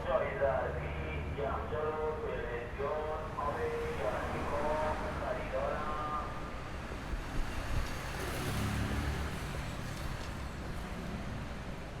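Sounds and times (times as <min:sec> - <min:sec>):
low rumble of street traffic: 0:00.0 - 0:12.0
vehicle passing: 0:07.6 - 0:09.6.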